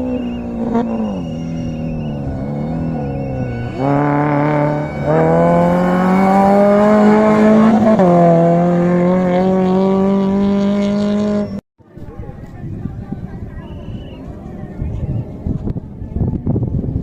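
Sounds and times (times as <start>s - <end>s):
engine revving hard: 0.0s - 11.6s.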